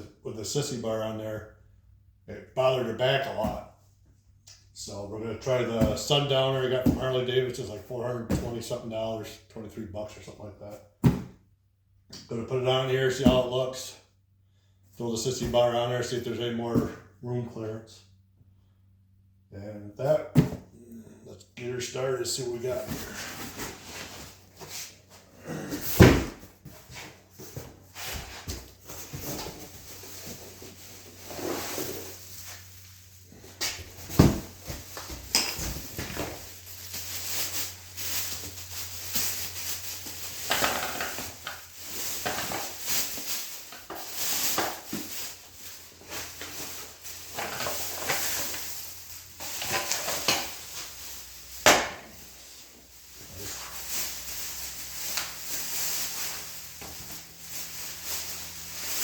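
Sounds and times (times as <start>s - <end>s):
packaging rustling and scraping: 22.6s - 59.0s.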